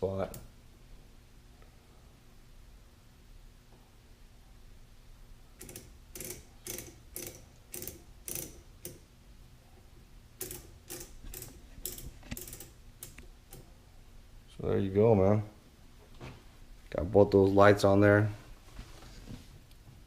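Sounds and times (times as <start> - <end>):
ratchet-like clicks: 5.6 - 9.1, 10.4 - 13.7.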